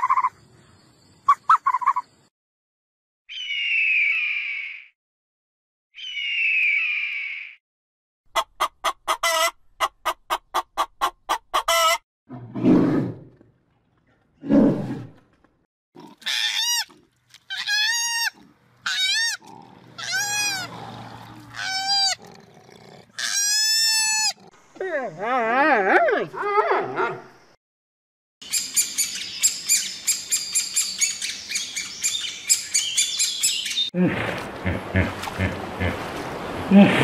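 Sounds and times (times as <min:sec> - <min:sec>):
wavering animal call: 0:17.5 - 0:22.3
low animal grunts: 0:19.4 - 0:23.2.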